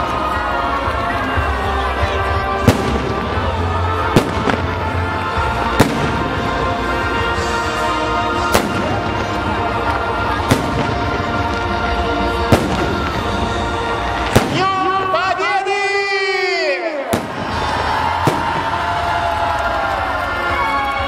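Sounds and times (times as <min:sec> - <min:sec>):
music playing: 0:00.0 - 0:21.0
firework bangs: 0:02.6 - 0:15.2, 0:17.0 - 0:20.1.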